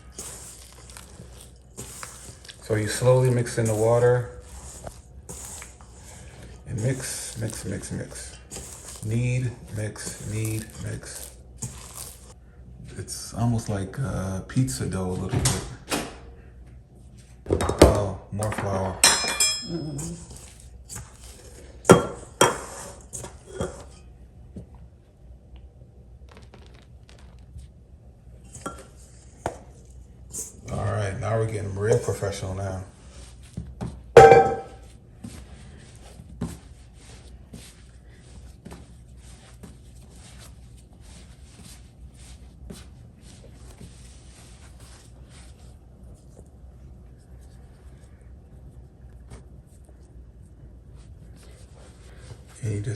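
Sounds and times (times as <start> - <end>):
hands kneading dough: 0.0 - 15.2, 19.8 - 52.9
kitchenware clinking: 17.5 - 20.3, 34.2 - 34.8
sharp knocks of utensils: 34.2 - 34.8.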